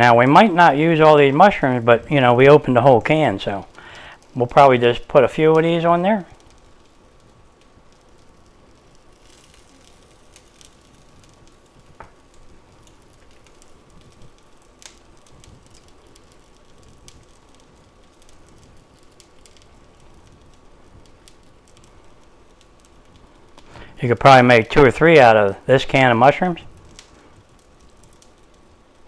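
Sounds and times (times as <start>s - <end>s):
faint steady hum: 0.0s - 29.0s
food sizzling in skillet: 8.9s - 17.4s.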